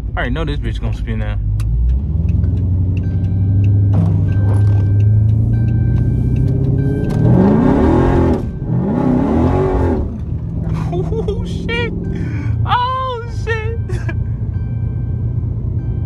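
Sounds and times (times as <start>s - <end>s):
car engine revving: 0.0s - 16.0s
car warning chime: 2.9s - 10.5s, 11.4s - 16.0s.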